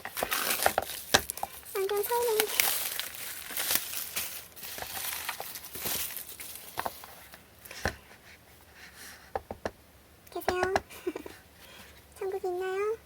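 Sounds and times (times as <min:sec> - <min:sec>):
packaging crinkling and rustling: 0:00.0 - 0:07.8
sharp clicks and taps: 0:09.4 - 0:10.9.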